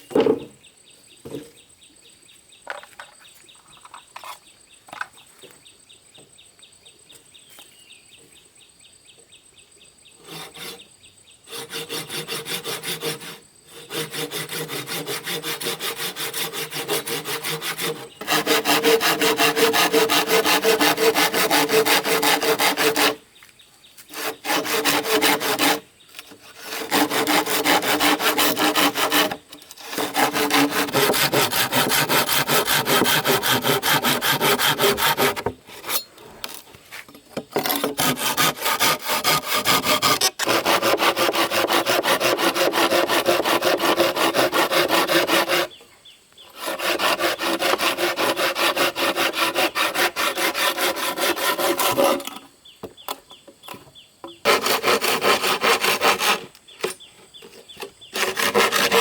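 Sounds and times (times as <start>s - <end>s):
hand saw cutting bamboo: 10.3s - 10.9s, 11.5s - 23.2s, 24.0s - 36.6s, 37.5s - 45.8s, 46.5s - 52.4s, 54.4s - 57.0s, 57.8s - 59.0s.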